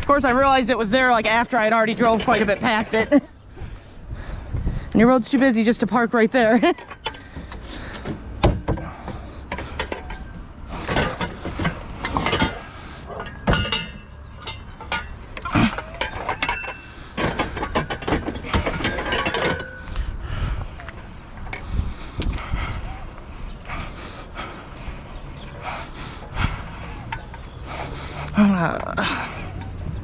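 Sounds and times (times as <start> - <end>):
scrap metal clanking and rattling: 0.0 - 3.3, 6.4 - 20.1.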